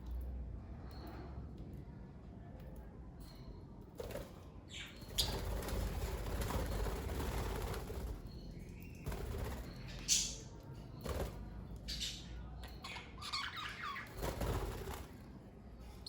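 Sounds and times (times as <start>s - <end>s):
budgerigars rustling and wing-flapping: 4.0s - 12.1s, 12.7s - 15.4s.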